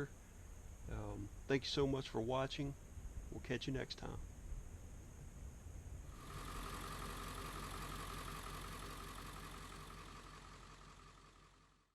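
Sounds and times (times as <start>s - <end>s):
engine idling: 6.1s - 11.9s.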